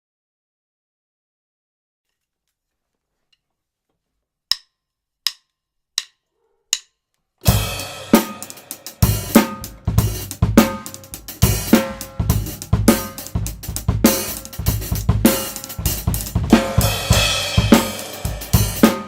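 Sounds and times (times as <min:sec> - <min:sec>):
drumstick clicks: 0:04.5 - 0:07.1
drum kit groove: 0:07.4 - 0:19.0
cymbal crash: 0:07.5 - 0:09.6.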